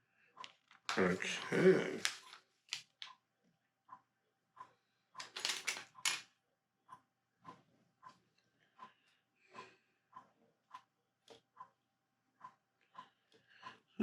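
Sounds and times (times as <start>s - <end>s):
plastic pieces clicking and rattling: 2.0s - 3.1s, 5.2s - 6.3s.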